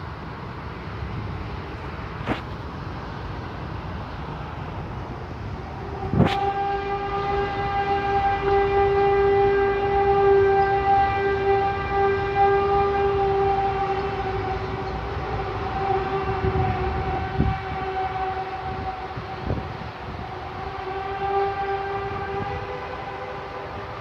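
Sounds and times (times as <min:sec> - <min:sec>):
trumpet-like droning tone: 0:05.3 - 0:24.0.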